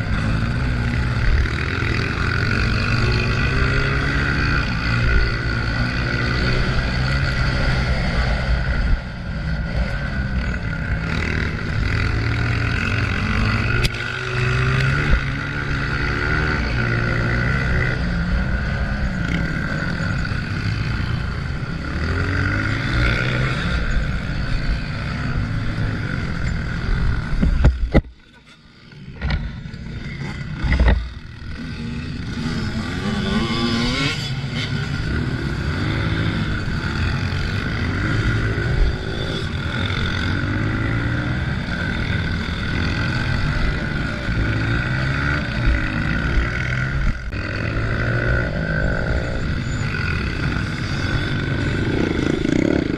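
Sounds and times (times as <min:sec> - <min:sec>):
motorbike engine revving: 0:00.0 - 0:52.9.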